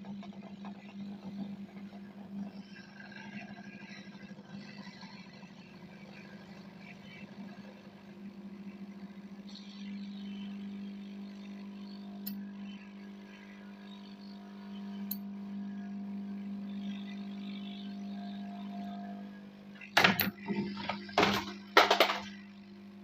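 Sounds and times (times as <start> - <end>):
hot air blower humming: 19.8 - 22.4.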